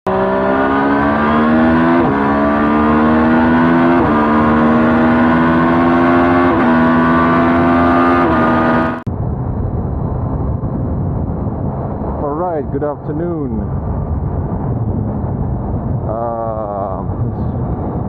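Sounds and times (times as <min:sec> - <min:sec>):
motorcycle engine accelerating: 0:00.1 - 0:09.1.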